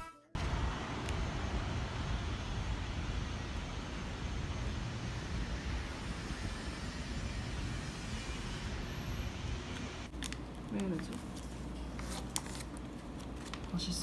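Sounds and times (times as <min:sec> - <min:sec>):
steady rumbling: 0:00.4 - 0:10.1.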